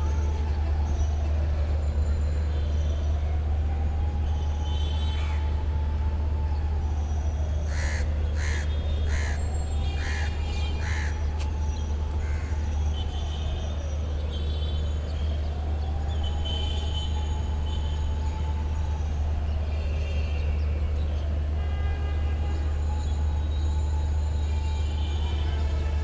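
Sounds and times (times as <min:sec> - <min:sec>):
low city rumble: 0:00.0 - 0:26.0
crows cawing: 0:07.7 - 0:11.2, 0:12.2 - 0:12.5.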